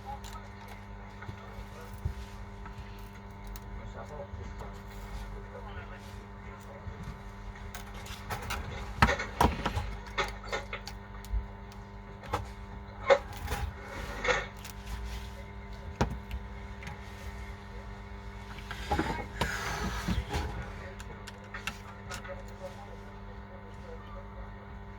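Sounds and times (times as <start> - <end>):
low electrical hum: 0.0 - 24.9
scraping rustle: 13.3 - 24.3.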